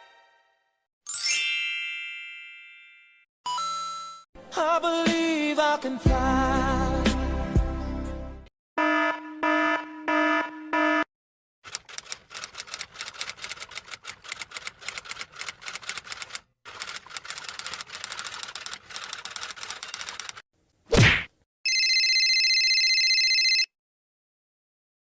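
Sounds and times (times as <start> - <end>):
rapid typing clatter: 11.6 - 20.4.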